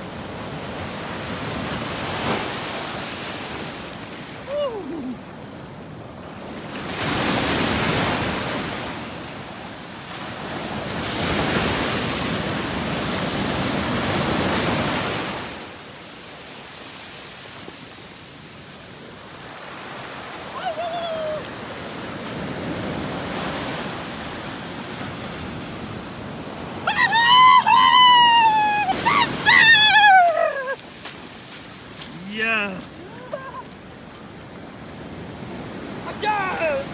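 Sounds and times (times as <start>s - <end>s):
sea waves washing on shore: 0.0s - 36.9s
high-pitched cries: 20.6s - 21.5s, 26.8s - 30.8s, 33.0s - 33.7s.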